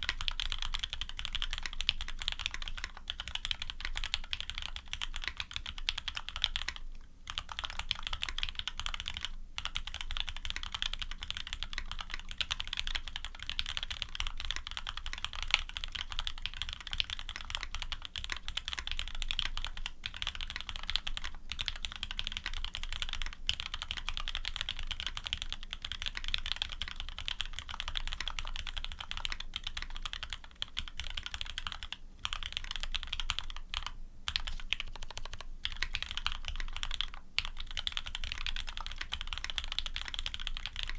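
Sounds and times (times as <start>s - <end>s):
fast typing on mechanical keyboard: 0.0s - 40.9s.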